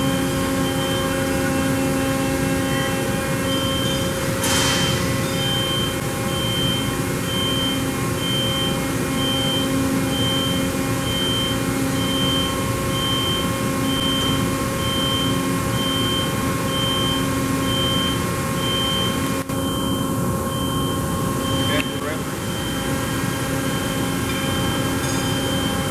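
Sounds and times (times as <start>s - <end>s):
machine running hum: 0.0s - 25.9s
short high beep: 21.5s - 22.9s.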